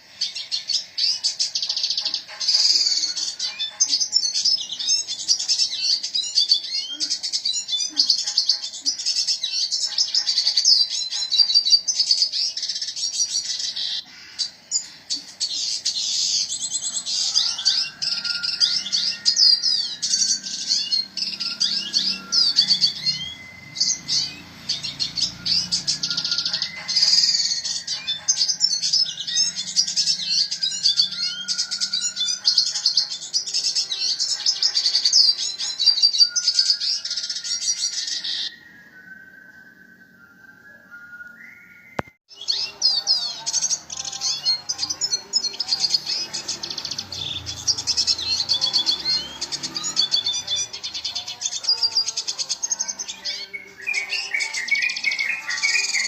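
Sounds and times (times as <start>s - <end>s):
siskin twittering and trilling: 0.0s - 39.2s, 41.4s - 56.0s.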